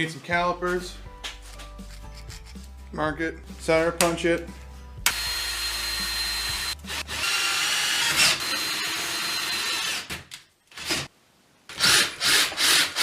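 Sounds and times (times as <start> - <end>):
electric drill whining: 5.1 - 10.2.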